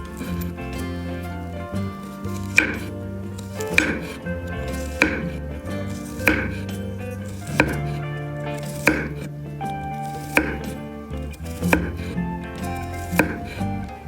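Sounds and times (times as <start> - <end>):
background music: 0.0 - 14.0
sharp knocks: 2.5 - 3.0, 3.6 - 5.5, 6.2 - 6.8, 7.5 - 8.0, 8.8 - 9.3, 10.3 - 10.8, 11.6 - 12.2, 13.1 - 13.6.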